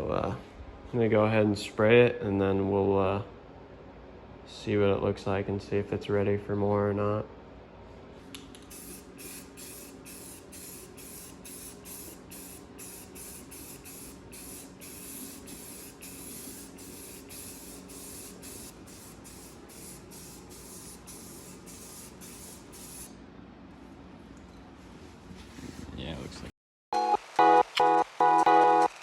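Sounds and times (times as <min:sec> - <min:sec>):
spray can spraying in bursts: 0:08.6 - 0:23.1.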